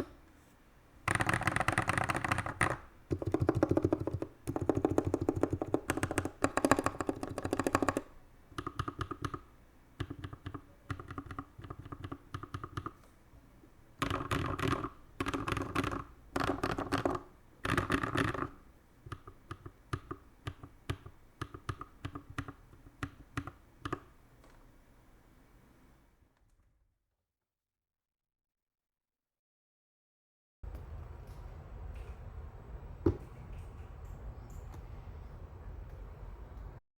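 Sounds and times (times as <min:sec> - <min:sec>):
mechanical keyboard typing: 0:01.1 - 0:13.0, 0:14.0 - 0:24.6.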